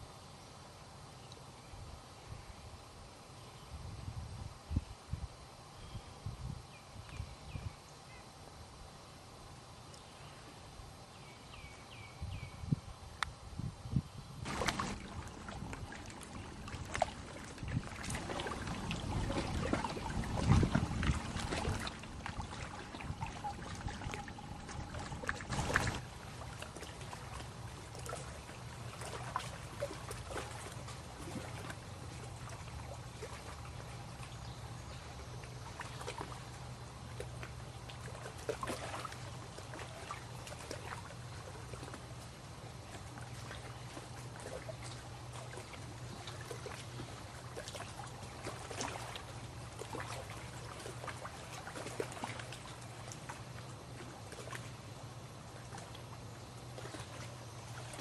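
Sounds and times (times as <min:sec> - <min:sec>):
steady low hum: 0:00.0 - 0:58.0
small splashes and knocks: 0:14.4 - 0:58.0
water lapping at shore: 0:14.4 - 0:58.0.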